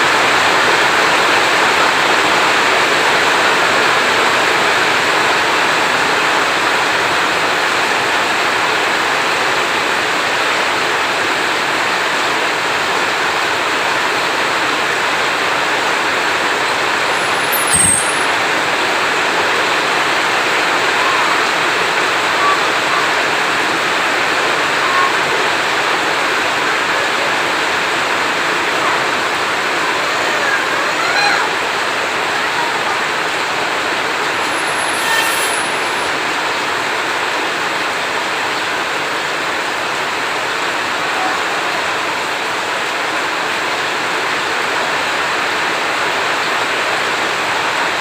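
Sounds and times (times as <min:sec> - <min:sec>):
heavy rain falling: 0:00.0 - 0:48.0.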